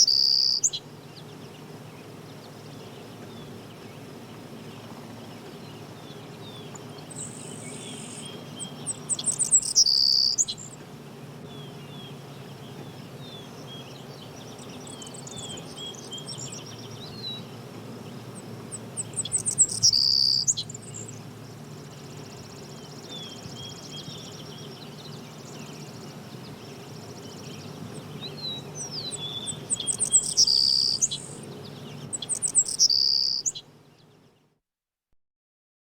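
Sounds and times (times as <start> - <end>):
close bird rapid chirps: 0.0 - 0.8, 7.1 - 10.8, 18.8 - 21.4, 28.1 - 33.6
low background hum: 0.0 - 34.5
songbirds chirping: 0.0 - 34.5.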